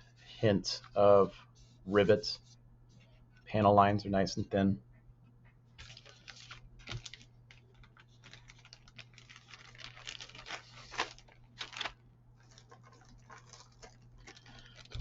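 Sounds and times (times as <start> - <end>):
plastic crackles: 5.8 - 15.0
plastic packaging crinkling: 5.8 - 15.0.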